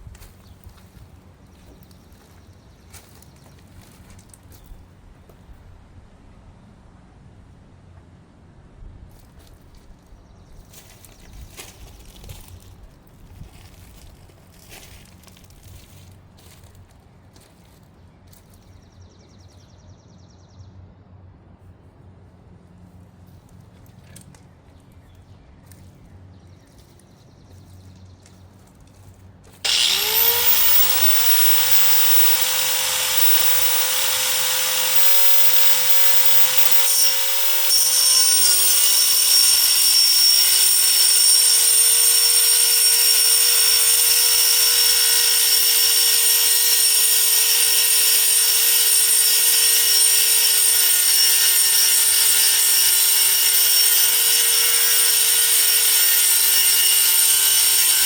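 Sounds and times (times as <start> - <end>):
angle grinder whining: 29.6 - 58.0.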